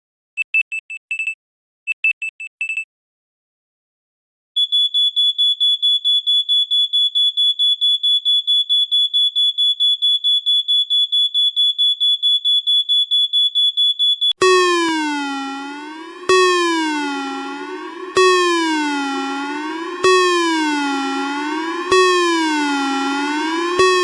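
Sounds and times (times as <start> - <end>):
rapid high-pitched electronic beeps: 14.4 - 24.0
wavering ringing tone: 14.4 - 24.0.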